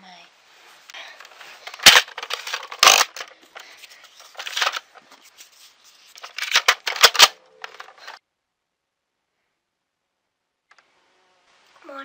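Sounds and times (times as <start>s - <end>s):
handling rustling: 0.6s - 8.2s
sharp plastic clicks: 1.2s - 5.0s, 6.2s - 8.2s.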